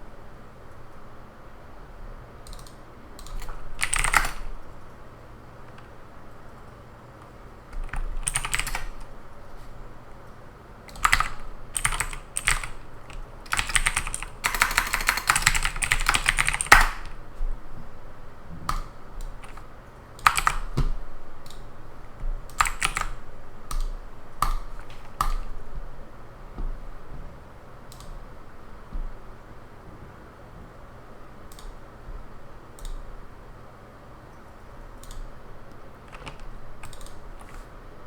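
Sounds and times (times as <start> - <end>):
computer keyboard typing: 2.4 - 5.0, 5.6 - 9.4, 10.8 - 17.2, 18.7 - 25.6, 27.9 - 28.2, 31.5 - 31.8, 32.7 - 33.1, 35.0 - 37.7.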